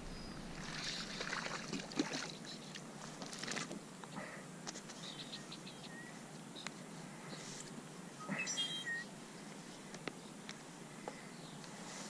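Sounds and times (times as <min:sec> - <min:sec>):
faint bird chirps: 0:05.0 - 0:06.7, 0:08.2 - 0:09.1.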